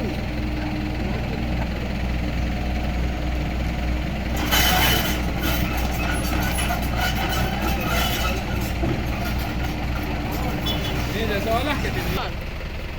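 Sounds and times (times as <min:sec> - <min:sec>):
excavator engine humming: 0:00.0 - 0:12.9
clatter: 0:04.3 - 0:12.2.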